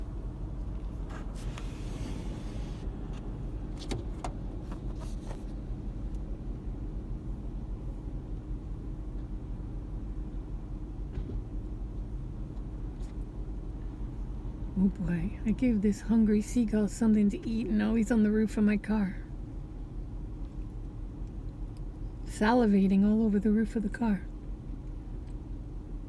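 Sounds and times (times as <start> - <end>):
car engine idling: 0.0 - 9.2.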